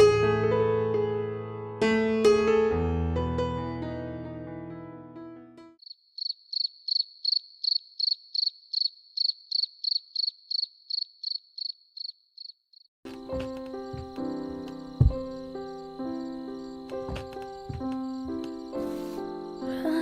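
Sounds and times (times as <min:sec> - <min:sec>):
piano music: 0:00.0 - 0:05.8, 0:13.1 - 0:20.0
insect chirping: 0:05.8 - 0:20.0.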